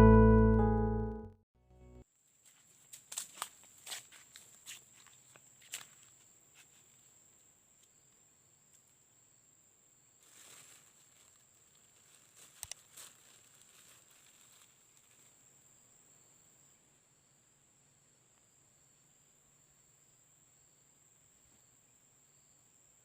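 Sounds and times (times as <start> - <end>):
high insect drone: 3.8 - 23.0
soft rustle: 10.2 - 15.5.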